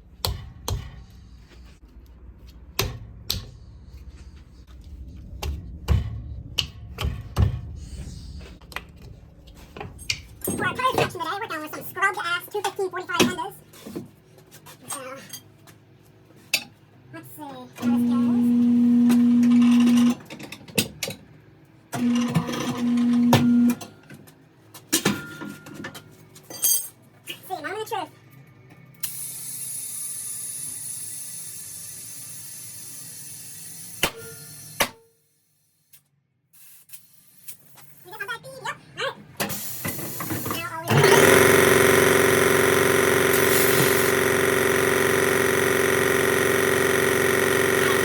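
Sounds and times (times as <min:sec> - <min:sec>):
metal tools clinking: 0:26.5 - 0:27.0
turntable motor humming: 0:40.9 - 0:48.0.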